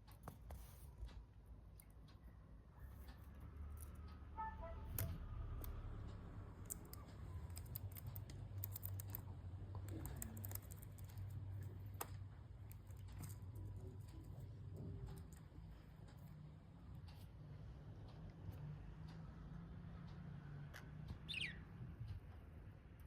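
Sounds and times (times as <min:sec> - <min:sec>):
budgies clicking and tapping: 0:05.6 - 0:16.3, 0:19.8 - 0:22.5
faint bird chirps: 0:21.1 - 0:22.0.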